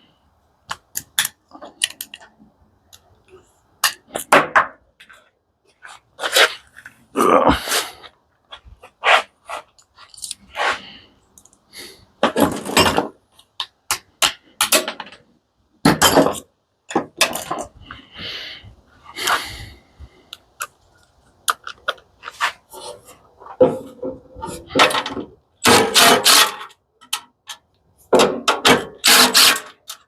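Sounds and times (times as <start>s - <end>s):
metal parts and tools clanking: 12.2s - 15.3s, 15.9s - 17.8s, 21.6s - 30.0s.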